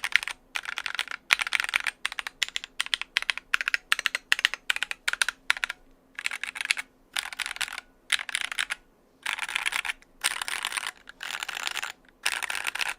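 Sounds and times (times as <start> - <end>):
mechanical keyboard typing clacks: 0.0 - 12.9.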